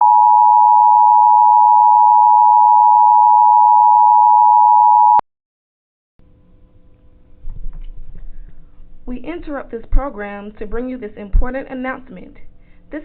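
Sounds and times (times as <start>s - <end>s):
loud two-tone beep: 0.0s - 5.2s.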